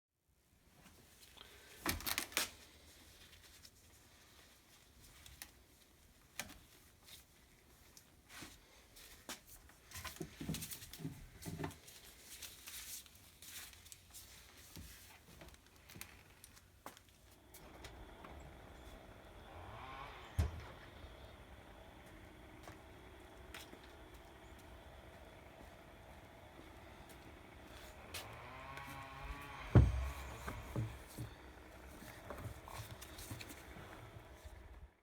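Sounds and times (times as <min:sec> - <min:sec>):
dull thuds: 0:29.2 - 0:33.0.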